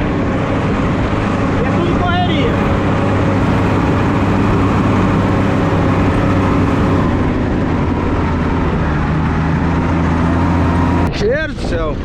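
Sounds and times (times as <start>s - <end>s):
heavy engine running: 0.0s - 12.0s
rushing noise: 1.1s - 8.4s.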